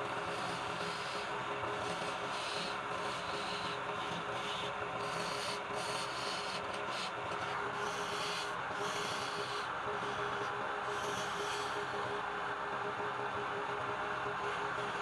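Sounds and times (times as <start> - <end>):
lathe motor hum: 0.0 - 12.9
sanding wood on a lathe: 0.1 - 12.1.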